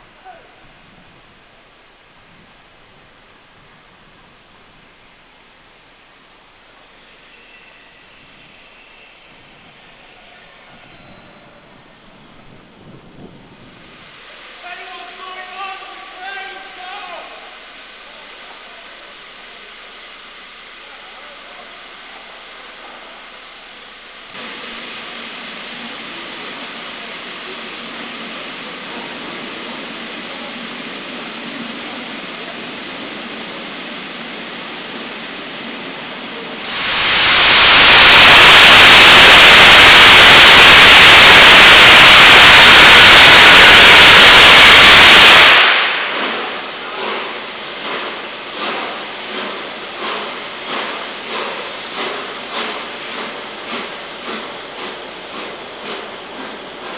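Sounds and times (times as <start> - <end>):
loud rush of escaping steam: 0.0 - 56.9
steam locomotive hissing: 0.0 - 56.9.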